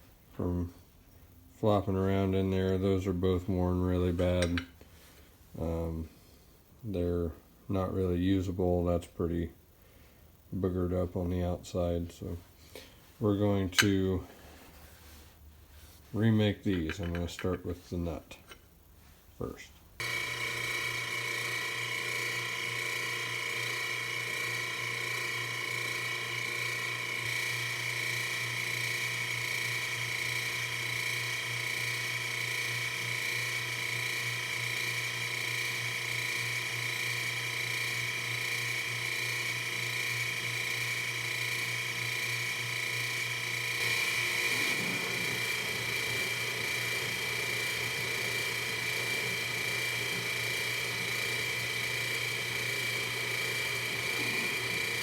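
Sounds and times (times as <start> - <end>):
machine tool whining: 20.0 - 28.5, 34.0 - 55.0
rough grinding noise: 43.6 - 55.0.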